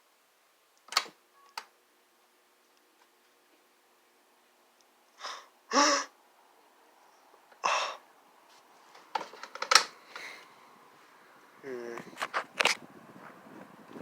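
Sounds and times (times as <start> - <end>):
breathy vocal outbursts: 5.2 - 6.2, 7.6 - 8.1, 11.6 - 12.1
sharp clicks and rattles: 9.0 - 10.0.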